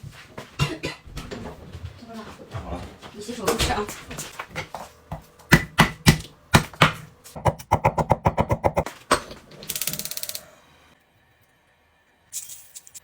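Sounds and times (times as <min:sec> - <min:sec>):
sharp knocks: 0:05.5 - 0:08.9.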